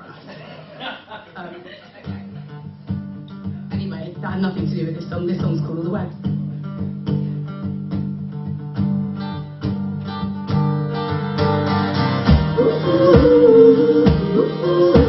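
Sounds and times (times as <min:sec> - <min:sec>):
acoustic guitar strumming: 0:02.2 - 0:15.0
low beats: 0:12.2 - 0:15.0.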